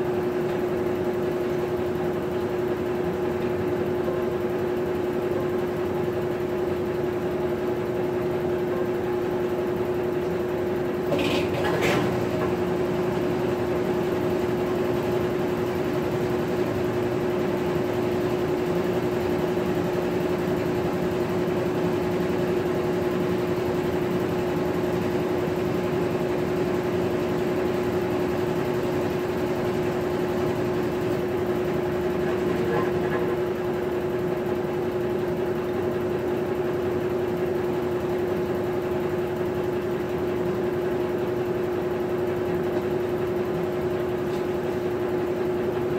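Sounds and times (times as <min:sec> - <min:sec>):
washing machine humming: 0:00.0 - 0:45.9.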